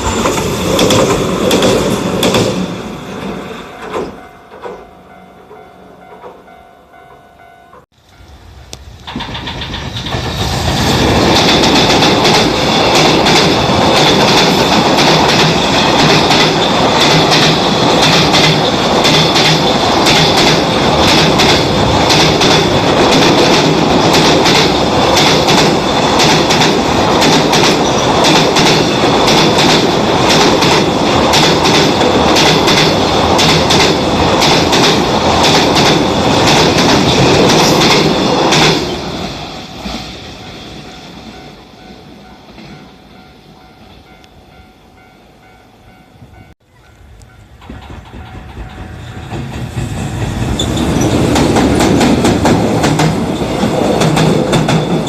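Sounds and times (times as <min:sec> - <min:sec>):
tram wheels clattering over rail joints: 0:00.0 - 0:05.0, 0:08.3 - 0:42.9, 0:46.4 - 0:55.0
wheel squeal: 0:50.5 - 0:51.2.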